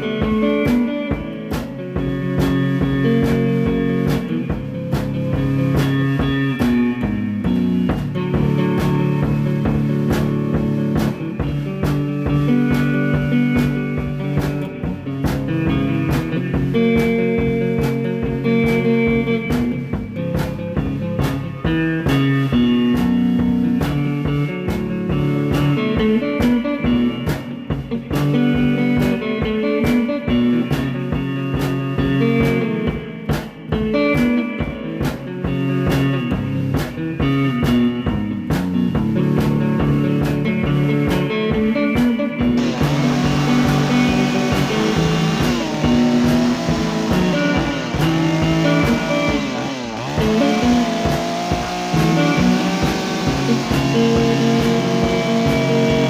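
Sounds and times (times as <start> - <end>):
blues-rock music: 0.0 - 56.0
chainsaw engine running: 42.6 - 56.0.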